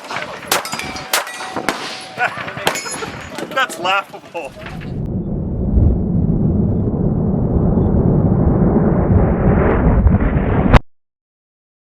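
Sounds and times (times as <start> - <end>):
sharp loud crack: 0.0 - 3.2
deep steady rumbling: 4.5 - 10.8.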